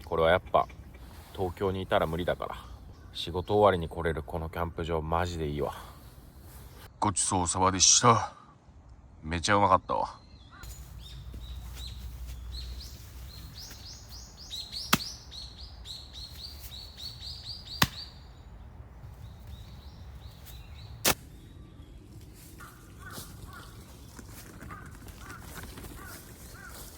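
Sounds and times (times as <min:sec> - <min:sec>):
small birds chirping: 0:00.0 - 0:04.0, 0:10.2 - 0:26.9
lower bird calls: 0:10.5 - 0:26.9.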